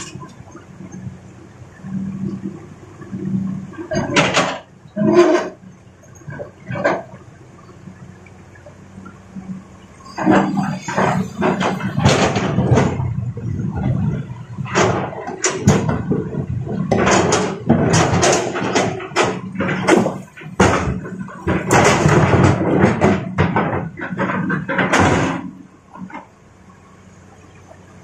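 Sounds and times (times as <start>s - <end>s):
diesel engine hum: 0.0s - 28.0s
rocks banging into steel truck bed: 10.2s - 26.2s.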